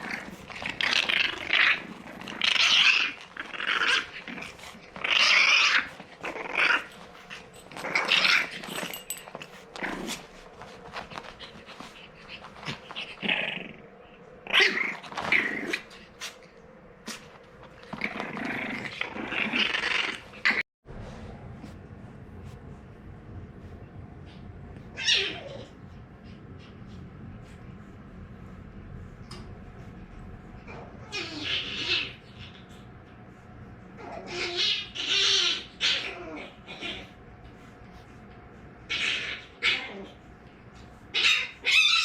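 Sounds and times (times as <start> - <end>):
puppy growling: 0.0 - 20.7, 24.2 - 33.2, 33.8 - 42.0.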